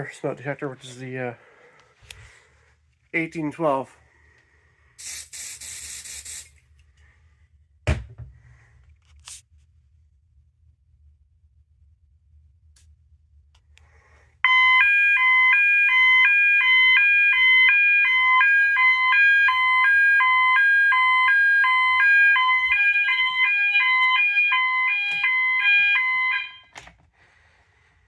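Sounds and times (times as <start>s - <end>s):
fire alarm two-tone sounder: 14.4s - 26.8s.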